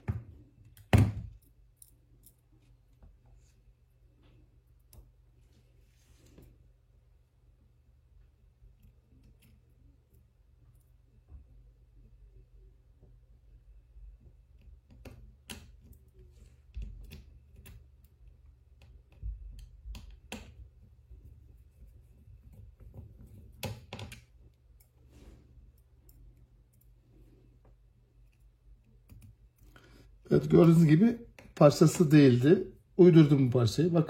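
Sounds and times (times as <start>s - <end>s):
small clicks and taps: 14.5s - 20.9s, 27.6s - 29.8s.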